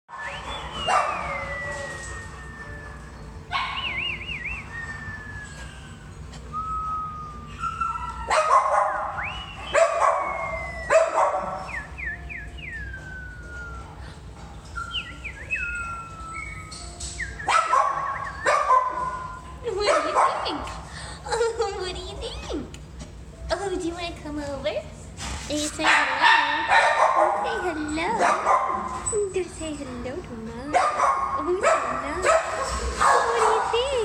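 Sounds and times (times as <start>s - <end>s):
dogs barking and yelping: 0.1s - 6.5s, 7.3s - 14.0s, 14.8s - 20.8s, 25.9s - 29.2s, 30.7s - 34.0s
dogs howling and whining: 0.1s - 14.1s, 14.7s - 20.6s.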